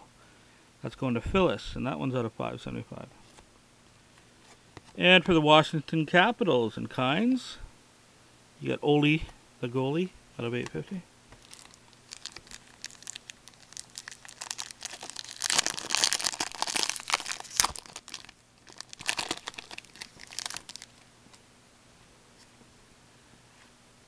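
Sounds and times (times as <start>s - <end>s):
wrapper tearing and crackling: 11.4s - 21.0s.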